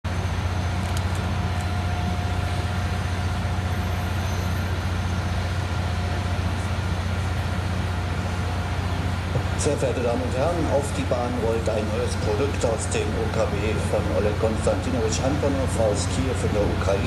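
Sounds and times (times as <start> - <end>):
jet engines low rumble: 0.0 - 17.0
faint engine whine: 0.1 - 17.0.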